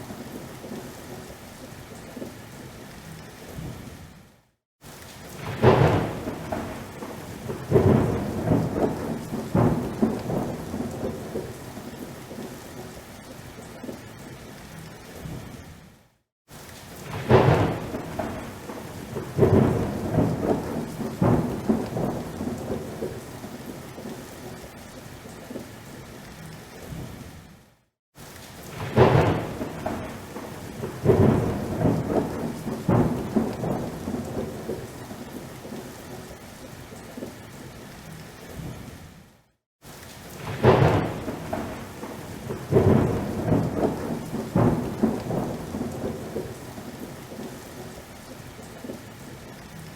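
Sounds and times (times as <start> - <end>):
steady rain: 0.0 - 49.9
rolling thunder: 5.4 - 11.6, 17.0 - 24.2, 28.7 - 35.8, 40.4 - 47.5.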